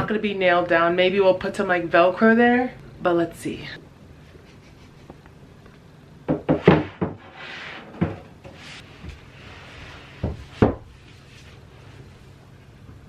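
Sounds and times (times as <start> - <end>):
wooden panels knocking: 6.3 - 7.3
sliding scrapes: 7.2 - 12.3.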